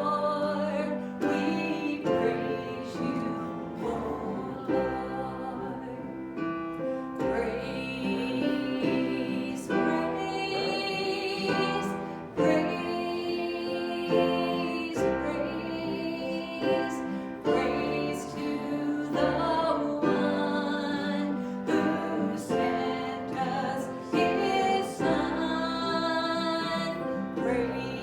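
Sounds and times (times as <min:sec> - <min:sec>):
people singing: 0:00.0 - 0:28.0
worship music instruments: 0:00.0 - 0:28.0.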